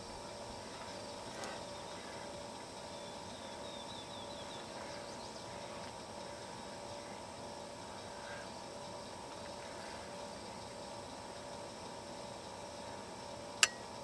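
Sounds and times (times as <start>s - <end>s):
faint steady hiss: 0.0s - 14.0s
small click: 13.6s - 13.8s.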